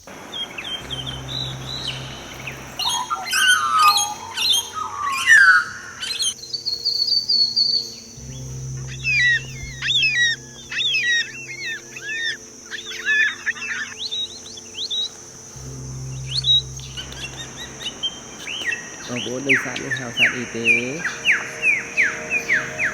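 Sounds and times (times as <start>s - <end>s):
high-pitched hum: 0.0s - 22.9s
songbirds chirping and singing: 0.0s - 22.9s.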